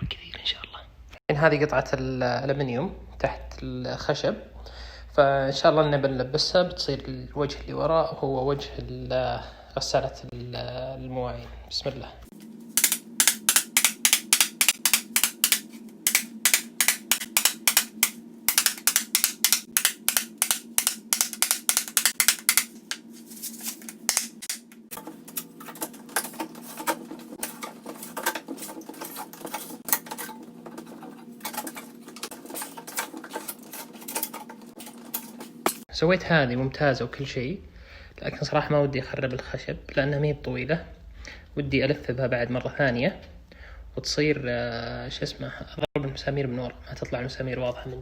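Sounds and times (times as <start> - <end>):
steady low hum: 11.5 - 35.9
hand tool scraping wood: 12.8 - 35.9.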